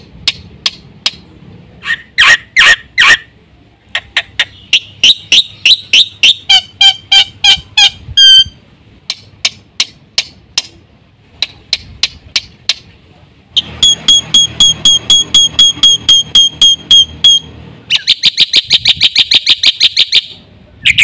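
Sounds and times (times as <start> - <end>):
starling singing: 4.0 - 8.6
clear bird whistle: 4.4 - 8.6, 13.6 - 21.0.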